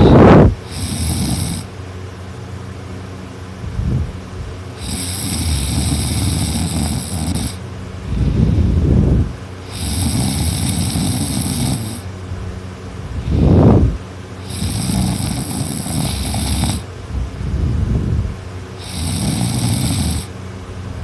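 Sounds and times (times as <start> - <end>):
person snoring loudly: 0.0 - 1.7, 4.8 - 12.1, 13.2 - 16.9, 18.8 - 20.3.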